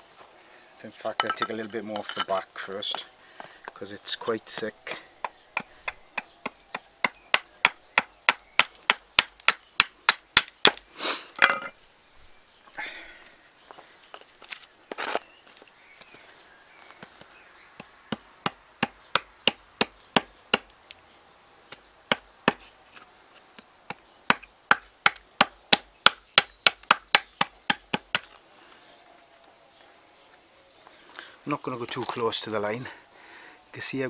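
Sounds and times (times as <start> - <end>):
small axe chopping wood: 4.5 - 10.8, 17.8 - 20.8, 21.7 - 22.7, 23.9 - 28.3.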